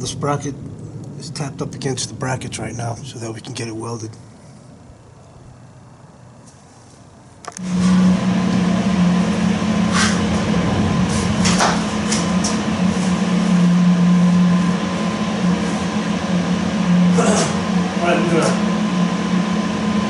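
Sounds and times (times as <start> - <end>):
welding machine humming: 7.5 - 20.0.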